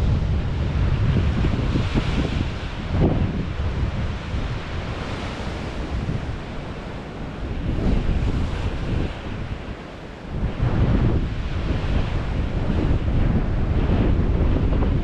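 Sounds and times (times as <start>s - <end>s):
surf washing ashore: 0.0s - 15.0s
wind buffeting microphone: 0.0s - 15.0s.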